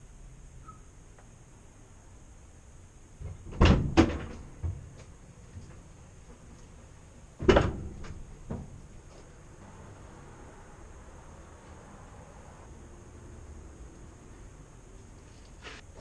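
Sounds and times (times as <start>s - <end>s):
hard knocks and clatter: 3.2s - 6.5s, 7.4s - 9.2s.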